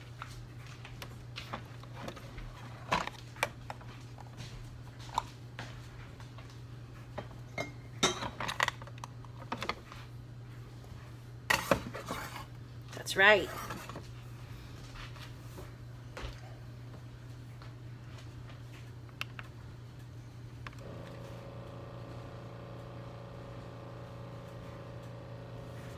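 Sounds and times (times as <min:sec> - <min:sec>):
dishes clinking on counter: 0:07.2 - 0:08.6
steady low hum: 0:10.5 - 0:25.9.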